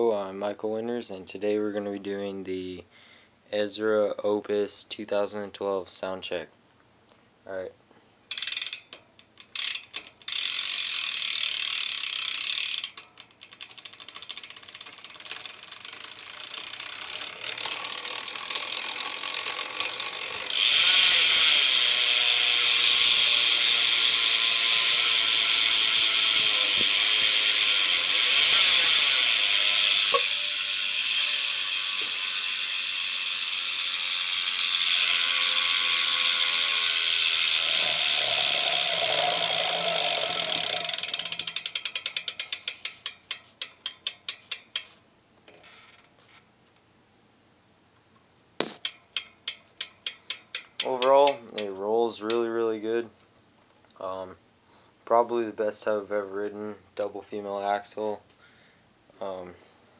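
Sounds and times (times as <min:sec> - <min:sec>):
bicycle hub freewheeling buzz: 0:08.3 - 0:46.0, 0:48.6 - 0:52.4.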